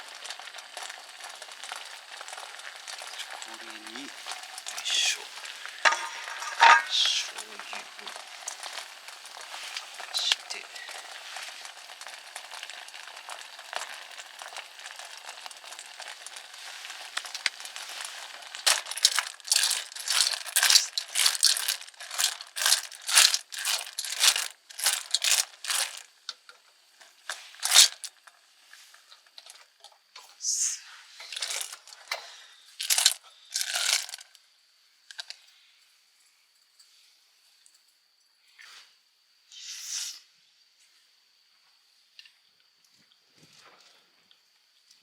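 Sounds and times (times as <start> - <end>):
faint hiss: 0.0 - 21.2, 25.7 - 33.6, 34.2 - 45.0
plastic packaging crinkling and tearing: 0.0 - 26.1, 27.3 - 28.2, 31.3 - 32.2, 32.8 - 34.2.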